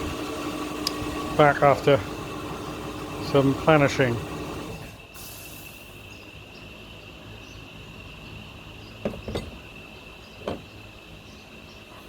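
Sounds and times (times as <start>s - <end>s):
steady high-pitched whine: 0.0s - 12.0s
dull knocks of metalwork: 9.0s - 9.6s.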